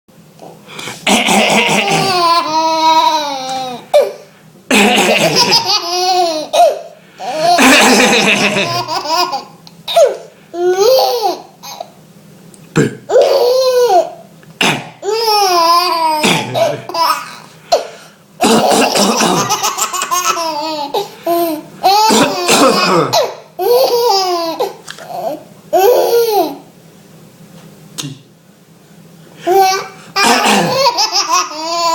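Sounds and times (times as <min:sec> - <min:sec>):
baby giggling: 0:01.0 - 0:04.1, 0:04.7 - 0:11.9, 0:13.1 - 0:14.1, 0:15.0 - 0:17.4, 0:18.4 - 0:26.6, 0:29.5 - 0:31.9
man coughing: 0:04.7 - 0:05.4, 0:12.7 - 0:13.1, 0:16.2 - 0:17.0, 0:17.8 - 0:19.6, 0:22.0 - 0:23.3, 0:30.2 - 0:30.8.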